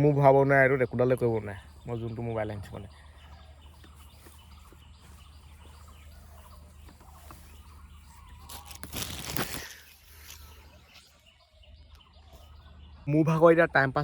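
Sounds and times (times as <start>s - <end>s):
faint birdsong: 0.0s - 14.0s
loud rustling: 8.5s - 10.4s.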